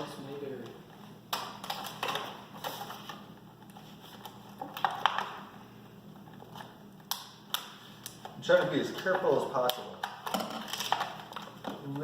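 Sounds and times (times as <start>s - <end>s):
knife cutting plastic packaging: 8.9s - 12.0s
plastic crackling and clicking: 8.9s - 12.0s.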